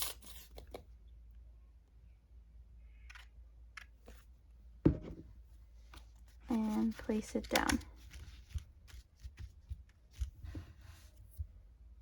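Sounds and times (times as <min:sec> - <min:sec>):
thump: 0:04.9 - 0:05.3
paper rustling: 0:06.0 - 0:11.4.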